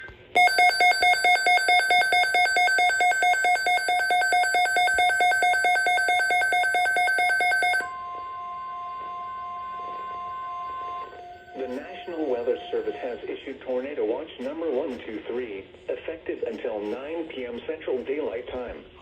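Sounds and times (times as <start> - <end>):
pulsing two-tone alarm beeps: 0.4 - 13.8
steady tone: 7.8 - 15.2.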